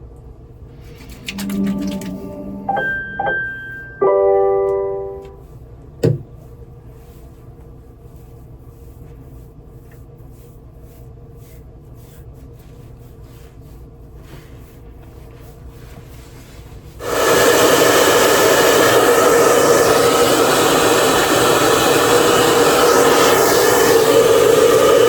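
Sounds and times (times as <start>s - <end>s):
low hum: 0.8s - 5.4s
faint rubbing strokes: 6.8s - 17.0s
hair dryer blowing: 17.0s - 25.0s.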